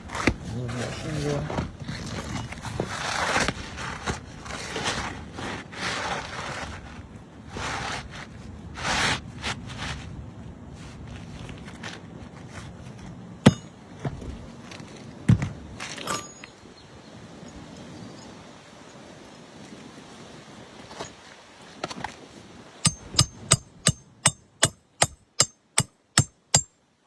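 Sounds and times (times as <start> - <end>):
shingles being scraped: 0.0 - 13.8
sharp knocks: 13.4 - 14.3.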